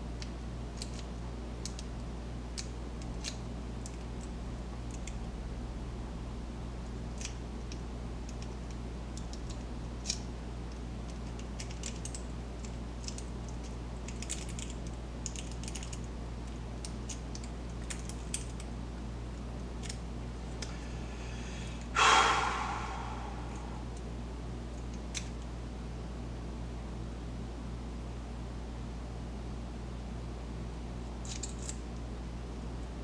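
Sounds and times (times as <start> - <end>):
lock picks clicking in a lock: 0.2 - 2.0, 2.6 - 4.3, 7.1 - 18.7, 31.2 - 31.8
short loud burst: 22.0 - 24.0.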